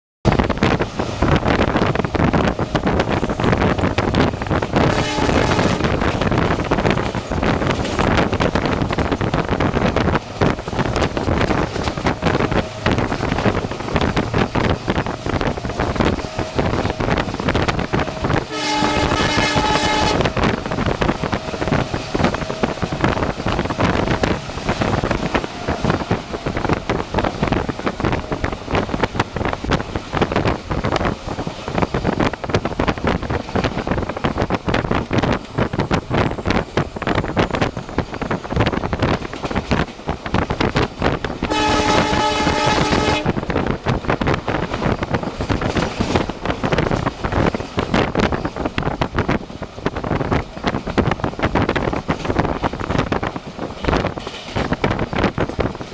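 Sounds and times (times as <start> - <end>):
train wheels clattering over rails: 0.3 - 55.9
train horn blast: 4.8 - 6.1, 17.9 - 20.6, 41.4 - 43.5.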